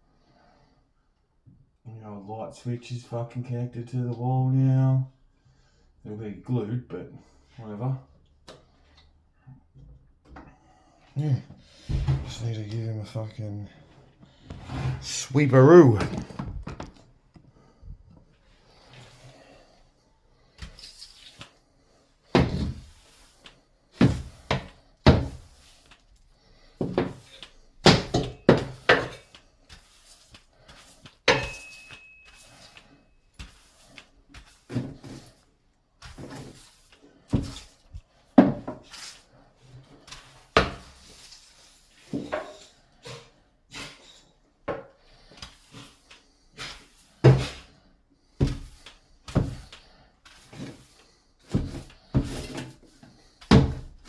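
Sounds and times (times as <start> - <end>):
broom knocking and scraping: 22.4 - 23.4, 45.5 - 47.7, 48.4 - 54.0.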